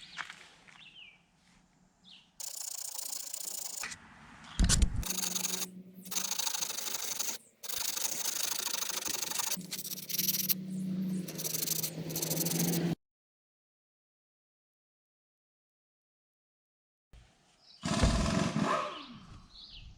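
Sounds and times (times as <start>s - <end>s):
scratchy sanding of metal: 2.4s - 3.8s, 5.0s - 13.0s.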